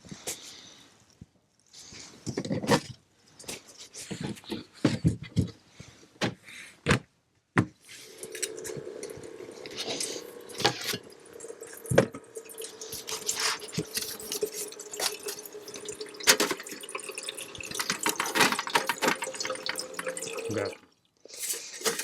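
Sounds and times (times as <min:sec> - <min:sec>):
water running into a container: 0:08.0 - 0:22.0
cookware knocking and clinking: 0:15.0 - 0:20.5.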